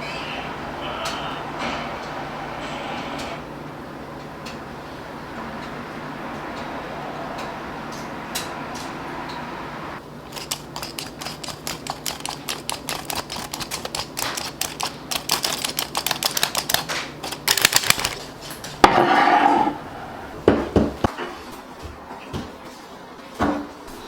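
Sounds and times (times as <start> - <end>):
fast light clicks: 10.3 - 18.6.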